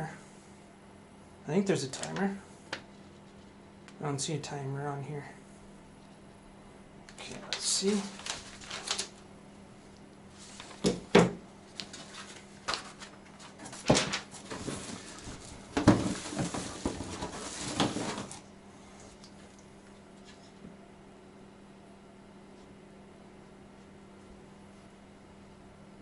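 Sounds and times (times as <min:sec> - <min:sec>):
packaging rustling: 0:07.4 - 0:09.2, 0:11.7 - 0:18.4
knocks and clatters of fan parts: 0:10.8 - 0:18.4.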